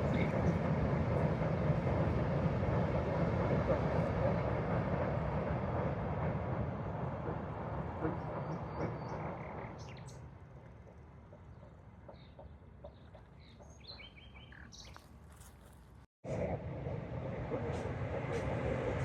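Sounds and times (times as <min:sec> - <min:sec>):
train rumble: 0:00.0 - 0:14.6, 0:16.2 - 0:19.0
small birds chirping: 0:08.1 - 0:15.5.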